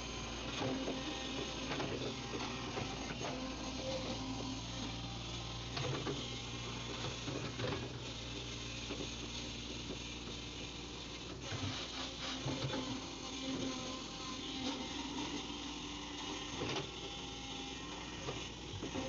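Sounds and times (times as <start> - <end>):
excavator diesel engine humming: 0.0 - 8.5.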